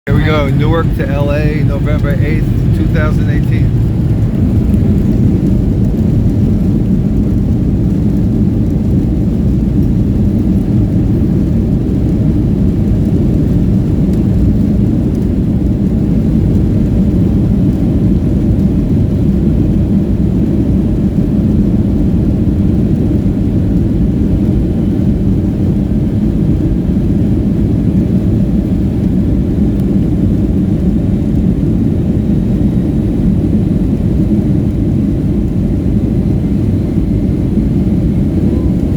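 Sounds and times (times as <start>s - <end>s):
jet engines rumbling in cabin: 0.0s - 38.9s.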